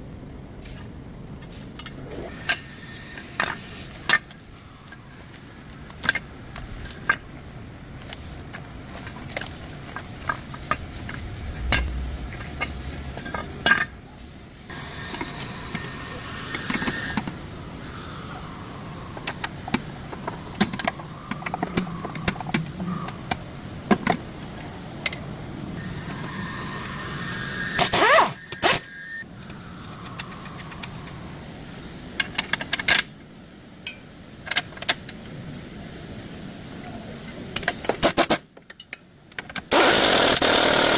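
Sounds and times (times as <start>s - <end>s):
power tool whirring: 14.7s - 17.4s, 25.8s - 29.2s, 39.7s - 40.9s.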